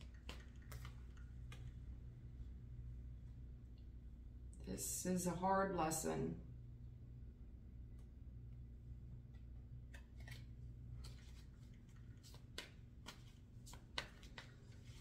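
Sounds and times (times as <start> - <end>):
cards clicking and snapping: 0.0 - 1.8, 9.9 - 14.8
low steady hum: 0.0 - 15.0.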